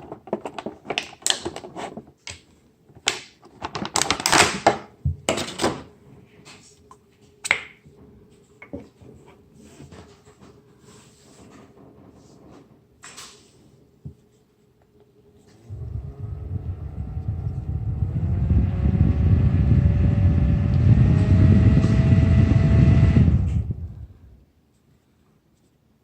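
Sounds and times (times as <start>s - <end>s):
air rumble on microphone: 15.7s - 24.4s
handheld fan whirring: 15.7s - 24.4s.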